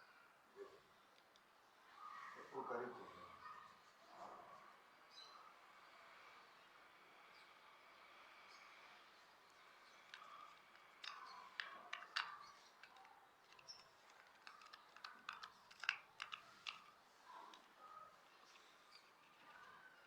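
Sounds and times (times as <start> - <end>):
clicks of small hard objects: 9.8 - 20.0.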